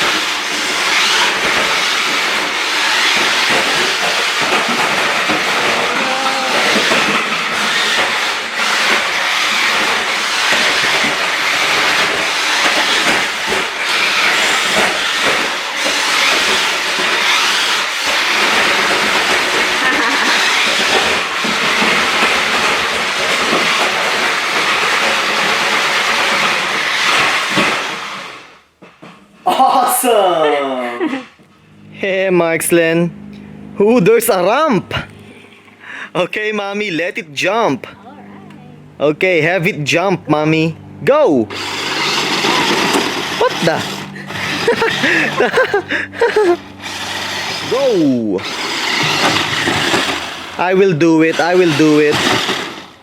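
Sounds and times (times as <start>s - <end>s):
toy car electric motor whir: 0.0s - 28.7s, 41.5s - 53.0s
tyre noise: 3.0s - 17.9s, 41.6s - 53.0s.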